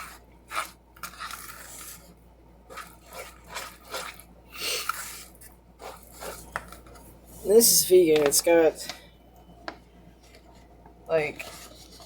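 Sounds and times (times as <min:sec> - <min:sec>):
batter stirring scrapes: 0:00.0 - 0:07.8, 0:10.2 - 0:12.0.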